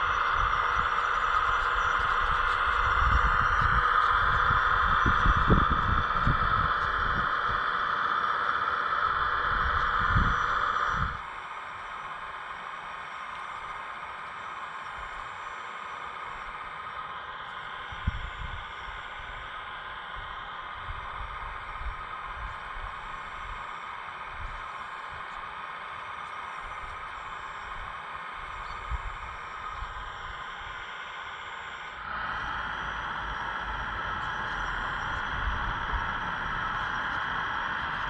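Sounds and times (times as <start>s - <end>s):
small electric motor whirring: 0.0s - 11.3s
steady hiss: 0.0s - 38.0s.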